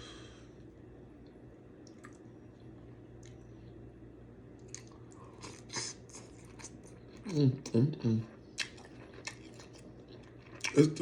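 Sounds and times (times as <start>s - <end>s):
mouth chewing and lip smacking: 1.8s - 3.8s, 4.6s - 10.9s.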